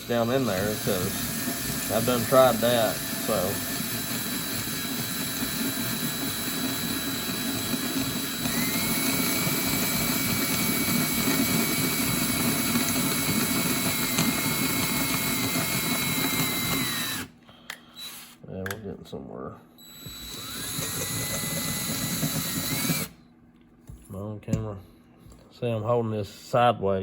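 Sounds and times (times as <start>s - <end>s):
electric drill boring metal: 0.0s - 17.3s, 19.8s - 23.2s.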